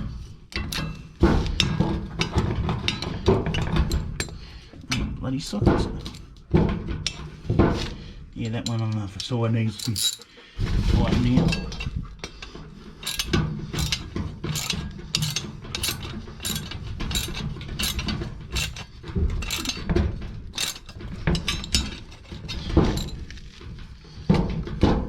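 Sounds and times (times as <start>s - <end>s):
ratchet wrench clicking: 13.0s - 19.8s, 20.6s - 21.9s.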